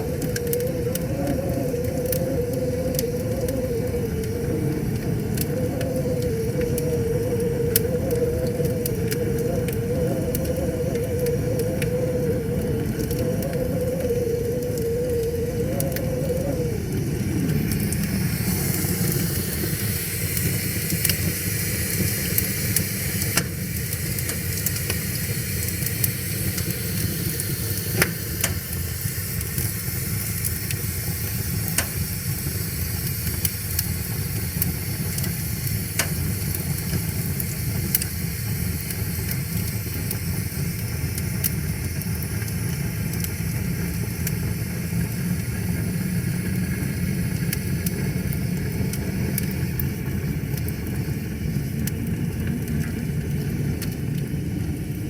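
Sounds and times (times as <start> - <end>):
wavering hum: 0.0 - 21.0
wood fire crackling and popping: 0.0 - 55.0.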